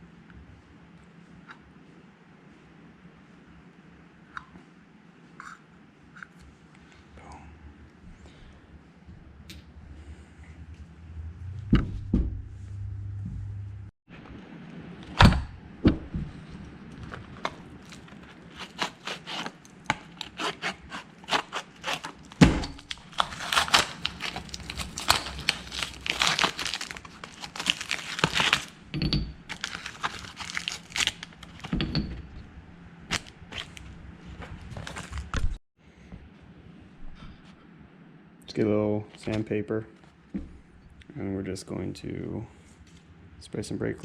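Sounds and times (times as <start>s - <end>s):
scratchy rustling: 17.2s - 22.2s, 23.0s - 28.7s.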